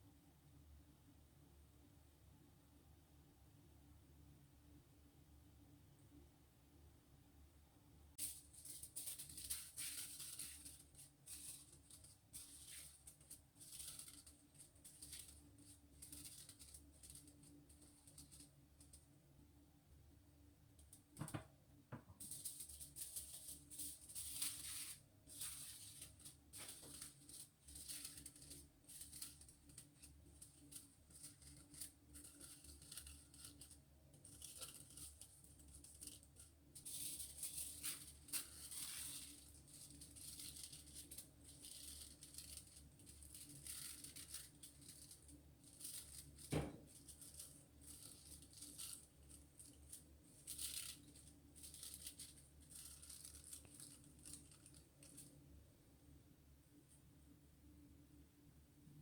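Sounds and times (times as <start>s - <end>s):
foil crinkling: 8.2s - 19.0s, 22.2s - 55.3s.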